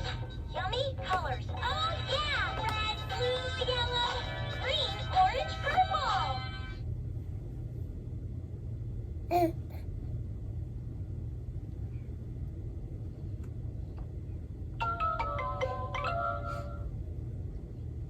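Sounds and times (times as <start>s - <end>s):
baby babbling: 9.3s - 9.8s.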